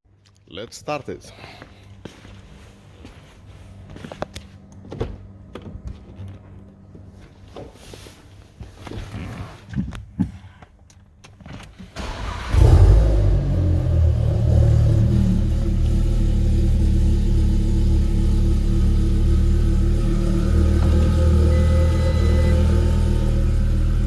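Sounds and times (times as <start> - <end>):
car engine starting and idling: 12.0 - 24.0.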